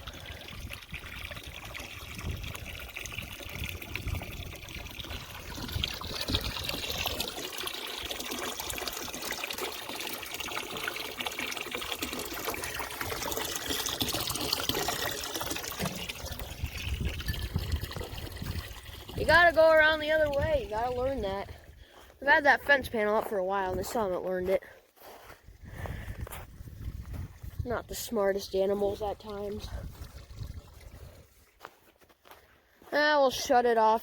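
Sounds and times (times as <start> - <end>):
water pouring into tank: 0.0 - 21.8, 26.8 - 31.5.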